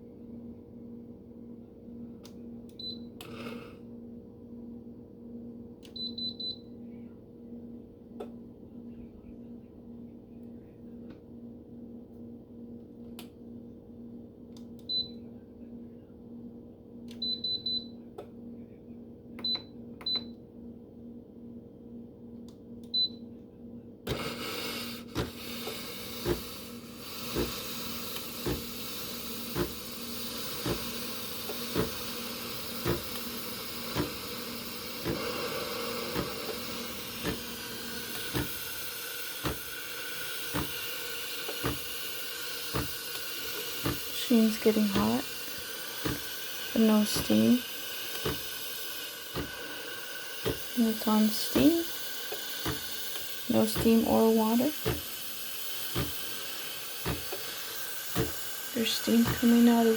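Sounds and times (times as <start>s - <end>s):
espresso machine beeps: 2.8s - 3.6s, 5.9s - 6.7s, 14.9s - 15.2s, 17.2s - 18.0s, 19.4s - 20.4s, 22.9s - 23.2s, 24.1s - 59.9s.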